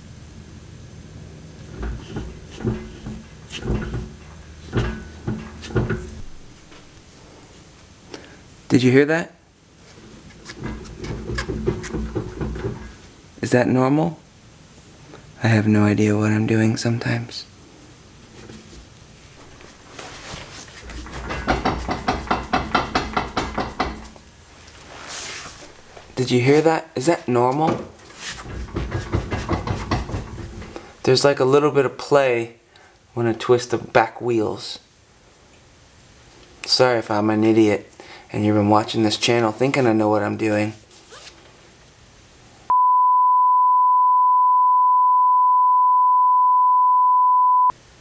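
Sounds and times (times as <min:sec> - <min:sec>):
dull clunks from wheel and driveline: 0:01.6 - 0:07.0
wheel assembly clicking: 0:20.8 - 0:24.2.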